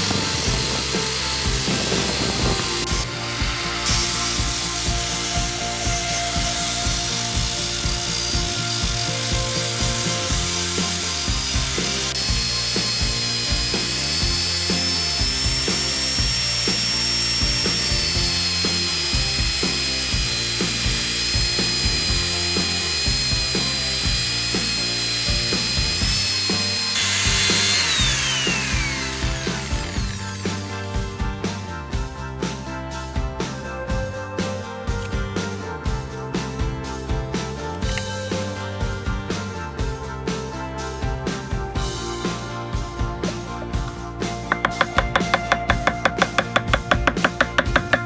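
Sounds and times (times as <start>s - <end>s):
power tool motor whining: 0.0s - 31.2s, 43.2s - 48.0s.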